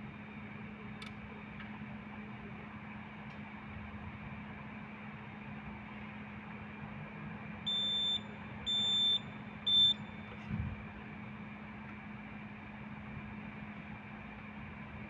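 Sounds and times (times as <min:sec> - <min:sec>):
alarm panel buzzer beeps: 0:07.7 - 0:10.3.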